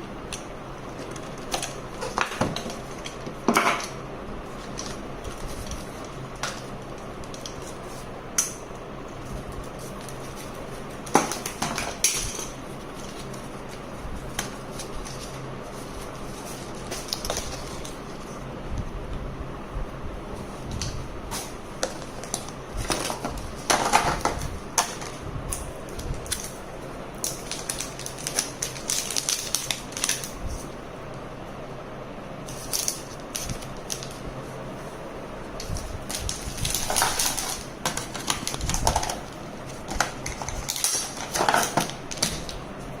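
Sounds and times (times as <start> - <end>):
steady low hum: 0.0 - 43.0
smartphone and packaging handled: 9.1 - 18.4, 20.4 - 26.6, 27.2 - 30.7, 35.6 - 42.6.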